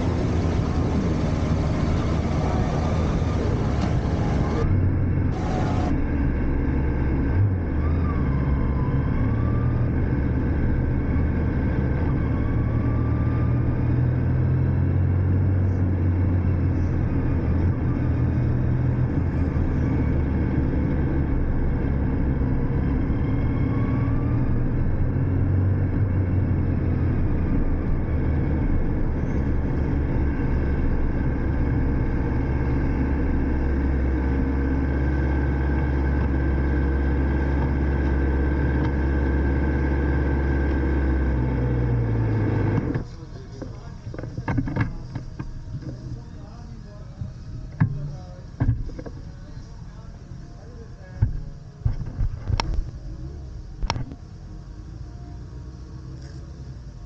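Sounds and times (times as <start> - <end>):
rushing noise: 0.0 - 7.0
vehicle engine running: 0.0 - 57.0.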